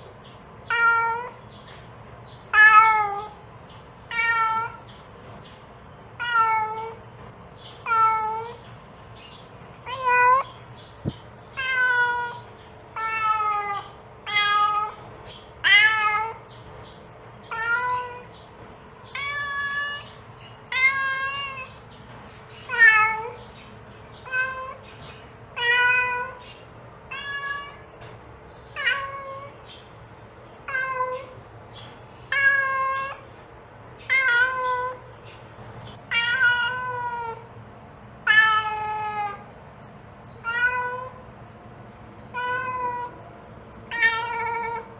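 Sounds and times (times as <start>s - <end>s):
cat meowing: 0.6s - 1.4s, 2.5s - 3.4s, 4.1s - 4.9s, 6.1s - 7.0s, 7.8s - 8.6s, 9.8s - 10.6s, 11.5s - 16.5s, 17.5s - 18.3s, 19.1s - 21.8s, 22.6s - 23.5s, 24.2s - 24.9s, 25.6s - 26.4s, 27.1s - 27.9s, 28.7s - 29.6s, 30.6s - 31.4s, 32.3s - 33.3s, 34.0s - 35.1s, 36.1s - 37.5s, 38.2s - 39.5s, 40.4s - 41.2s, 42.3s - 43.2s, 43.8s - 44.9s.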